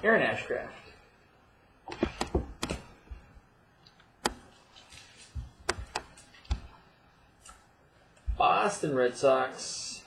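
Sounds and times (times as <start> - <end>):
trading cards clicking and tapping: 1.9 - 2.9, 4.2 - 4.5, 5.6 - 6.8.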